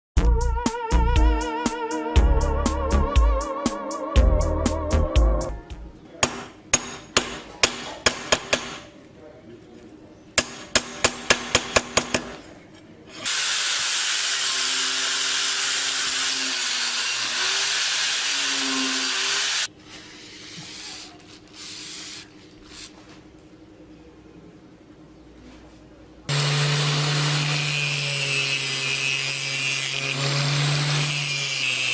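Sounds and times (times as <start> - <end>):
power tool running: 13.1 - 19.7, 26.3 - 31.9.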